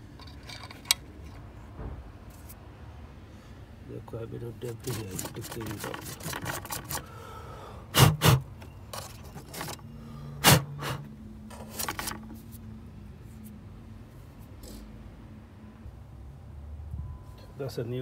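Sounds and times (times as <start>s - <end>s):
knocks and clicks of engine parts: 0.0s - 2.5s.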